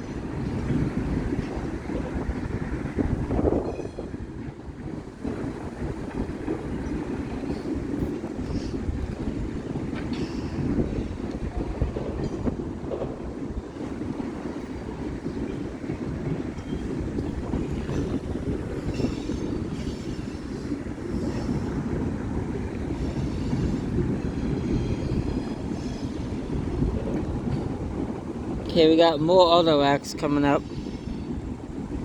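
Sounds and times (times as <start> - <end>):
train wheels rumbling on rails: 0.0 - 32.0.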